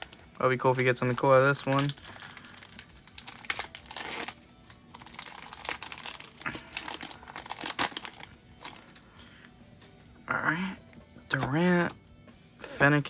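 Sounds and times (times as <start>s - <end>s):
foil wrapper tearing and crinkling: 0.0s - 9.1s.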